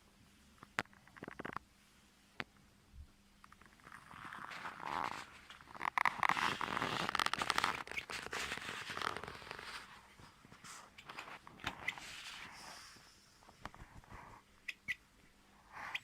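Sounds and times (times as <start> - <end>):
crackling and clicking near microphone: 0.6 - 1.7, 3.4 - 12.4.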